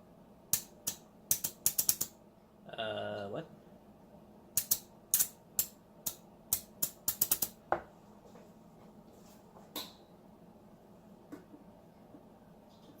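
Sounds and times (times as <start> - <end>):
hand clamp ratchet clicks: 0.6 - 2.1.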